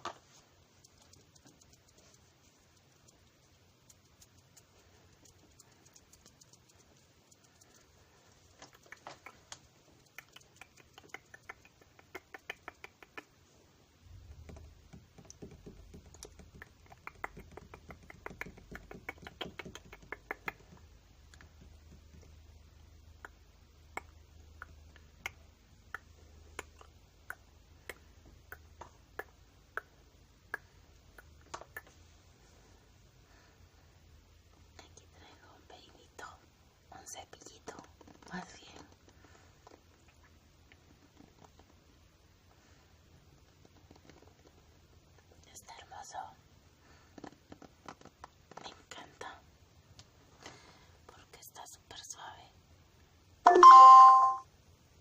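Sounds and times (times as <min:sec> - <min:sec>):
light clicks and taps: 0:00.0 - 0:13.4, 0:14.3 - 0:22.6.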